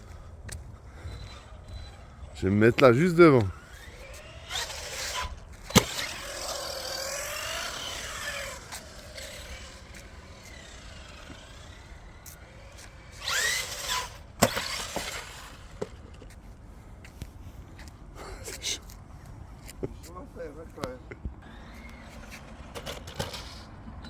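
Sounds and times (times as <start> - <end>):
electric motor whining: 0.0 - 16.4, 21.4 - 24.0.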